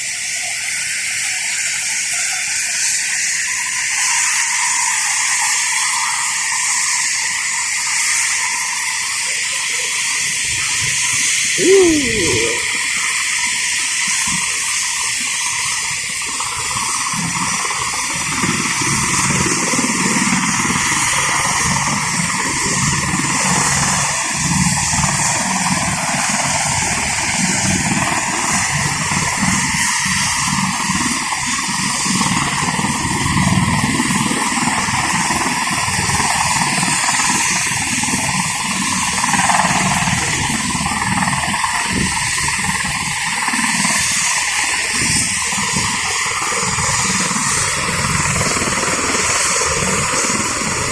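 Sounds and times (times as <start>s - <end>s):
helicopter rotor whirring: 11.6s - 13.8s, 14.9s - 50.9s.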